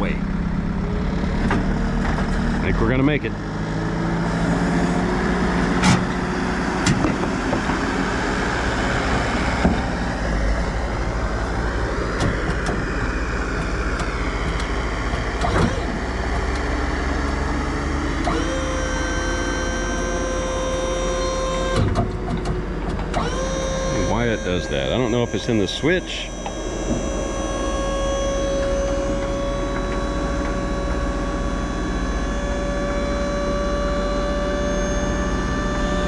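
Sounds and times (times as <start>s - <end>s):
tractor engine running: 0.0s - 36.0s
electric whine: 3.8s - 36.0s
sharp clicks and knocks: 21.7s - 23.4s.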